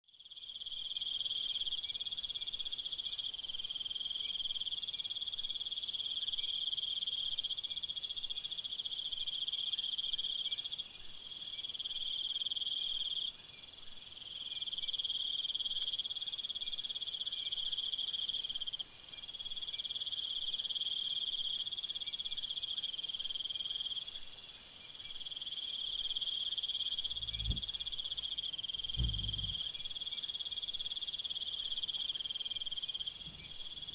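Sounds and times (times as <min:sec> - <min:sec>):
crickets trilling: 0:22.8 - 0:33.9
low thumps: 0:27.0 - 0:29.8.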